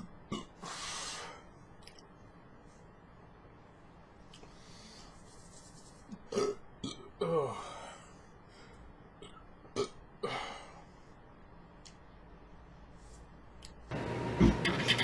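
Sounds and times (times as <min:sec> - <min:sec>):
person burping: 0:06.2 - 0:07.6.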